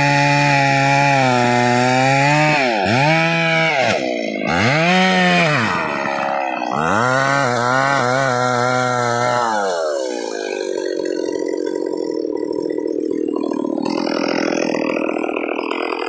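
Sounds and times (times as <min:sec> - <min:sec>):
chainsaw cutting wood: 0:00.0 - 0:16.0.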